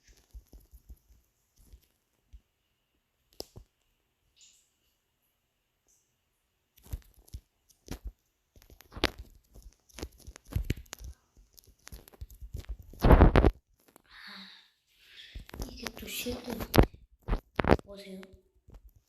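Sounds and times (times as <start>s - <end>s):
crackling and scraping handling noises: 0.0s - 2.5s, 6.7s - 14.1s, 15.2s - 19.0s.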